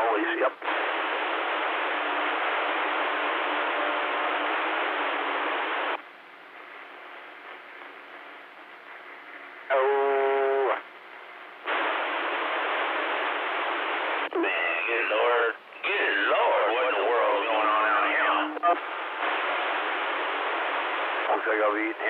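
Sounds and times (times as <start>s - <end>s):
radio receiver hiss: 0.0s - 22.0s
steady pitched tone through radio: 0.0s - 22.0s.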